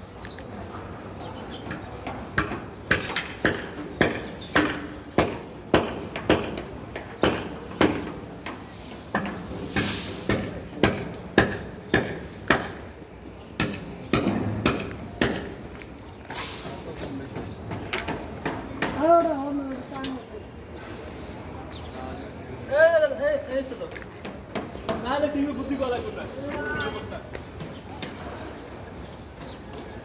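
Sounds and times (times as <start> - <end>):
brief hiss: 16.3 - 16.9.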